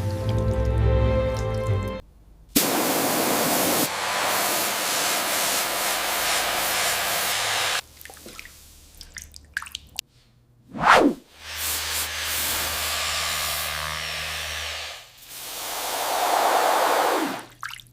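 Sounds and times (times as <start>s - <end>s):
liquid spray hissing: 2.6s - 7.8s, 11.4s - 13.8s, 14.9s - 17.5s
faint drips: 8.0s - 10.1s.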